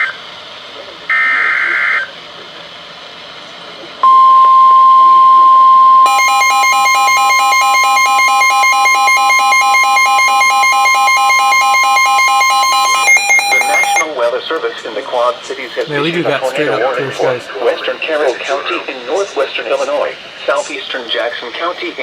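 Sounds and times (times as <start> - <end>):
rapid electronic alarm beeping: 4.0 - 14.1
steady alert tone: 4.0 - 14.1
warbling digital data screech: 6.0 - 14.1.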